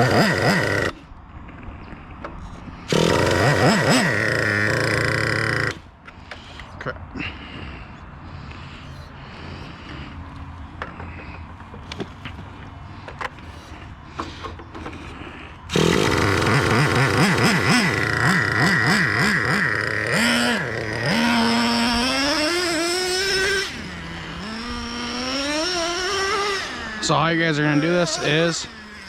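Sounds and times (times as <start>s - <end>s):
model engine revving: 0.0s - 1.0s, 2.9s - 5.9s, 15.7s - 29.0s.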